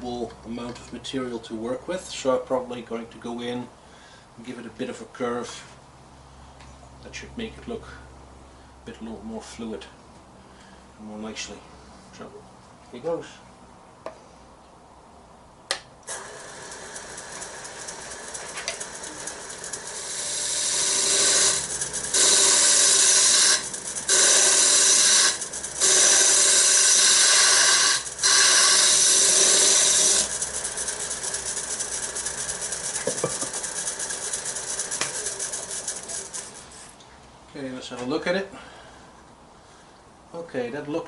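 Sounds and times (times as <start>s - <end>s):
wood lathe running: 16.1s - 36.8s
turning tool cutting hiss: 16.1s - 36.9s.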